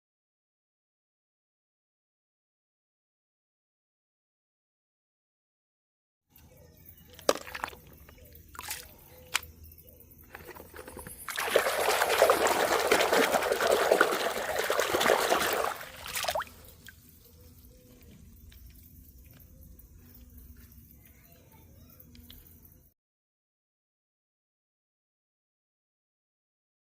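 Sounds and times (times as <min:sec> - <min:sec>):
water pouring and splashing: 0:10.3 - 0:16.9.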